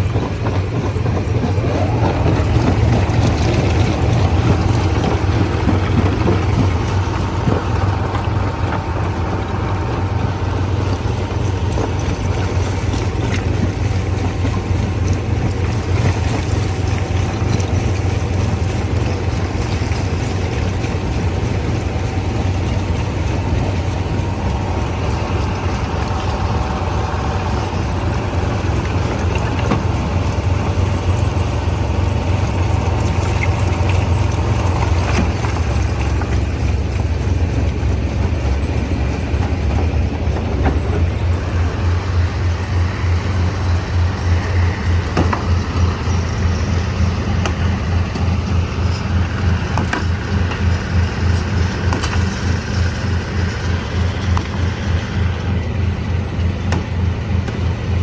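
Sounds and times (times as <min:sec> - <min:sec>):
stone crusher engine rumble: 0:00.0 - 0:58.0.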